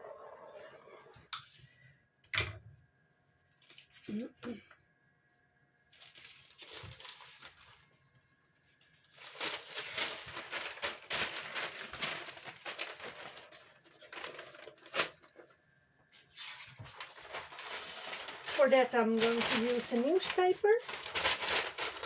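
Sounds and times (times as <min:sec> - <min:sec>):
newspaper rustling and crinkling: 0:03.6 - 0:04.2, 0:05.9 - 0:08.0, 0:08.9 - 0:22.0.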